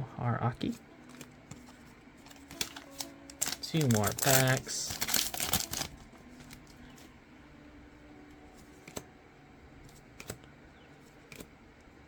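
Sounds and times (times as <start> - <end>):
handling trading cards: 0.6 - 7.2, 8.4 - 9.1, 9.8 - 11.9.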